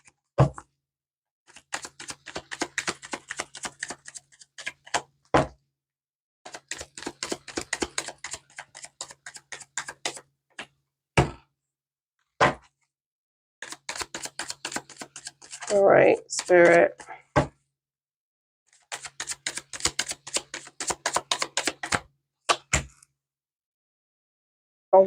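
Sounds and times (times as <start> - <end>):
cards being shuffled: 1.5 - 5.1, 6.5 - 10.8, 13.6 - 15.8, 18.8 - 22.6.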